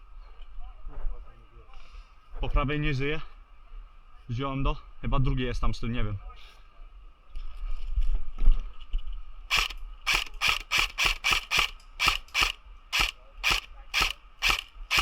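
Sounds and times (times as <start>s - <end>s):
airsoft rifle firing sharp clacks: 9.5s - 15.0s.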